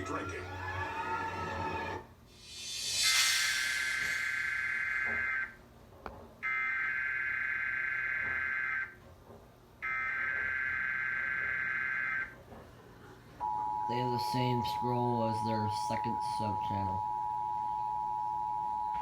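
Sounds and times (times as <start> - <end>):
screechy digital data tones: 2.5 - 5.6.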